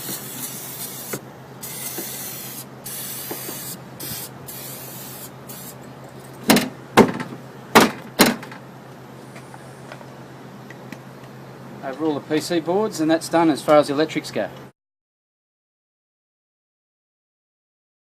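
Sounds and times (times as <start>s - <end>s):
spray can hissing: 0.0s - 5.8s
loud knocks: 6.5s - 8.6s.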